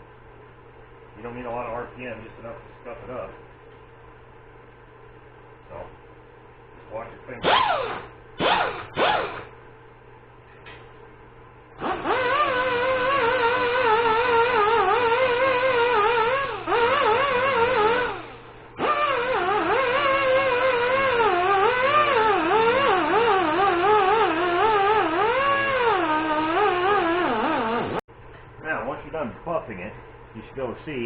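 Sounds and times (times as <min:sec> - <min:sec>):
die grinder whine: 0:07.4 - 0:09.5, 0:11.8 - 0:28.0.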